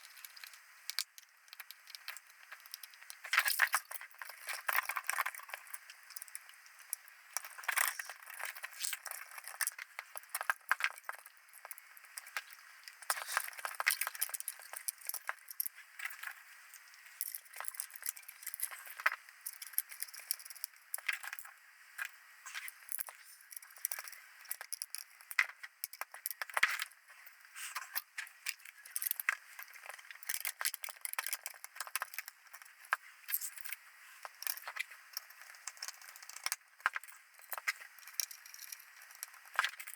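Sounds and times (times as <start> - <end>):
small metal parts clinking: 28.7 - 39.9.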